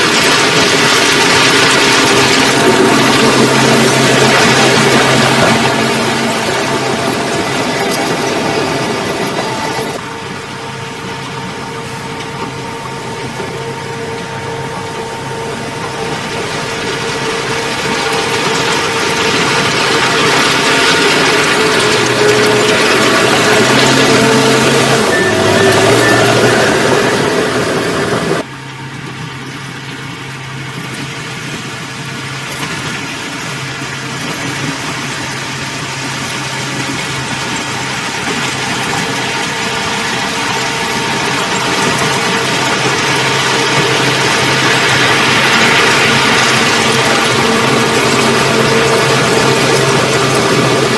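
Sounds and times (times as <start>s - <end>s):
loud sound cutting off: 0.0s - 28.5s
constant whine: 0.0s - 50.9s
diesel engine running: 0.0s - 50.9s.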